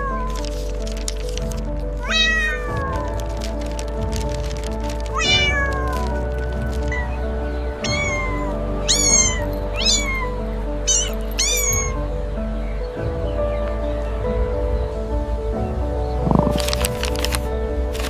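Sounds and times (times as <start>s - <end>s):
cat meowing: 0.0s - 0.4s, 2.0s - 3.5s, 5.1s - 7.2s, 7.8s - 12.0s
background music: 0.0s - 18.0s.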